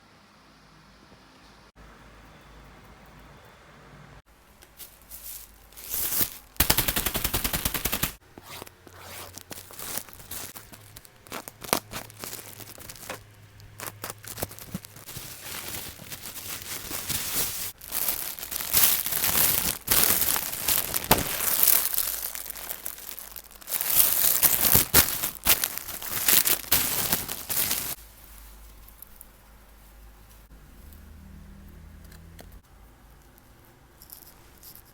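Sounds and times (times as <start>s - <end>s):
plastic packaging crinkling: 4.6s - 29.3s.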